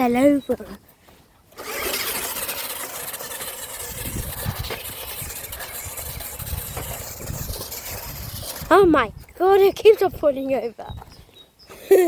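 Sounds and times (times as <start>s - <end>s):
rc car motor running: 1.6s - 9.0s.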